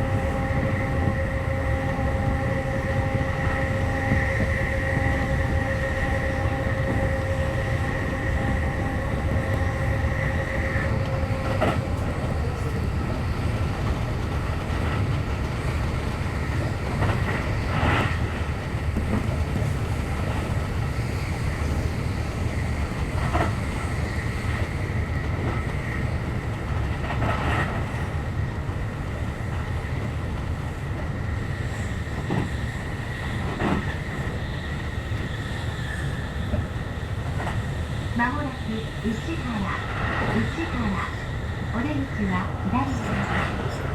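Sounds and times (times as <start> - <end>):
train wheels rumbling on rail: 0.0 - 43.9
clacks over rail joints: 33.4 - 34.1.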